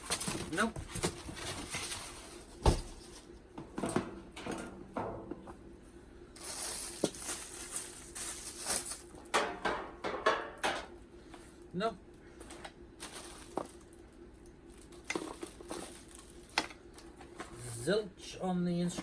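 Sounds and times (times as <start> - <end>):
packaging rustling and clattering: 0.0 - 4.0, 6.4 - 9.3, 12.4 - 14.0, 14.7 - 17.6.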